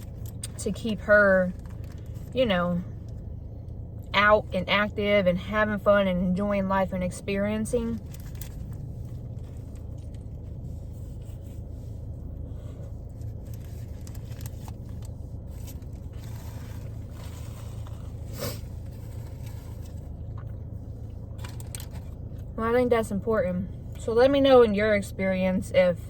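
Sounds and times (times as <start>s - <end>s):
chewing and food handling: 0.0s - 2.4s, 8.0s - 22.6s
steady low hum: 0.0s - 26.0s.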